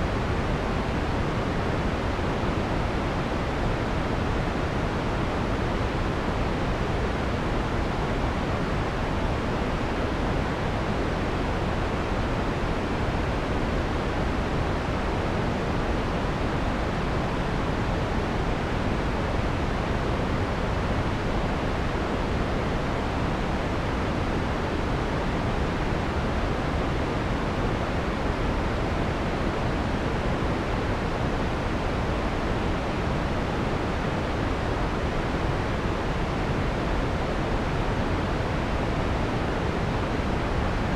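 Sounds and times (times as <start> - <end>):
soft filtered white noise: 0.0 - 40.9.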